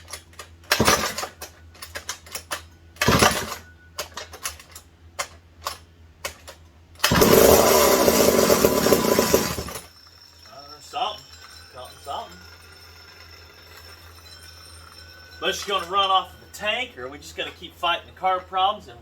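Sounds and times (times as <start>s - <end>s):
starter cord pulls: 0.0s - 9.9s
chainsaw engine running loudly: 7.0s - 9.9s.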